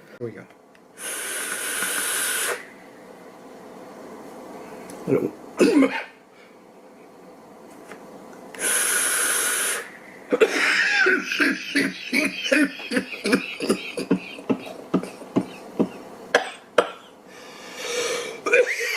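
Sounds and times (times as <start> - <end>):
hissing e-cigarette draw: 1.0 - 2.8, 8.6 - 10.0
man coughing: 5.6 - 6.2, 10.3 - 17.2.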